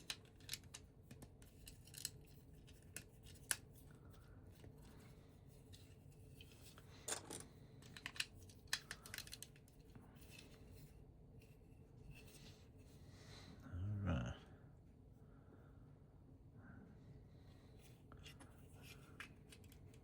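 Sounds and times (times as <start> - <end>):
plastic bricks clicking: 7.1 - 9.6.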